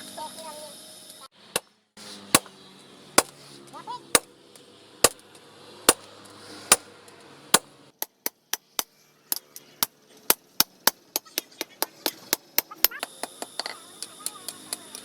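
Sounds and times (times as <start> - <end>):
hammer striking knife blade: 2.3 - 2.5.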